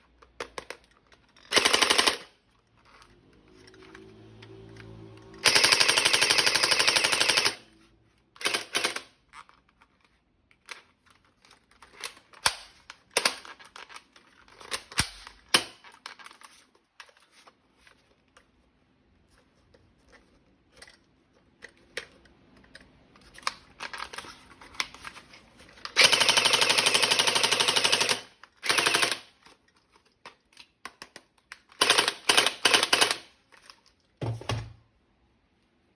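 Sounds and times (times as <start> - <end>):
toy gun automatic fire: 1.5 - 2.3, 5.4 - 7.6, 8.4 - 9.1, 26.0 - 29.3, 31.8 - 33.4.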